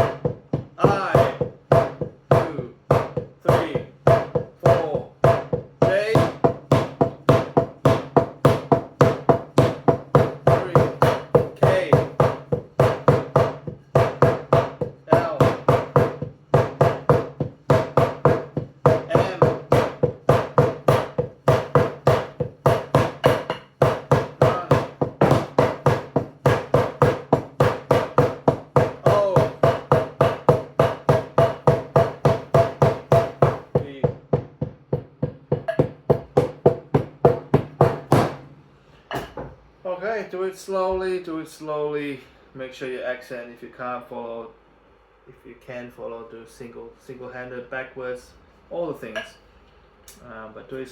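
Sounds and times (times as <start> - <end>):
wooden drumsticks striking drum: 21.6 - 26.7.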